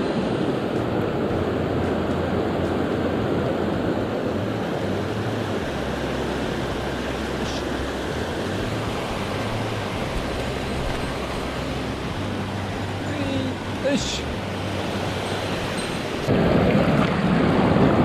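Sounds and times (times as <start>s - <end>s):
mountain stream rushing: 0.0s - 18.0s.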